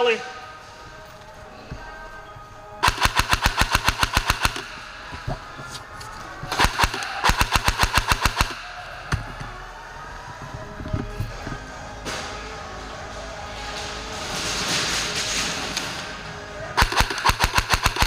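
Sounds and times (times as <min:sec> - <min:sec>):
airsoft rifle firing bursts: 0:02.8 - 0:05.0, 0:06.5 - 0:08.9, 0:16.8 - 0:18.0.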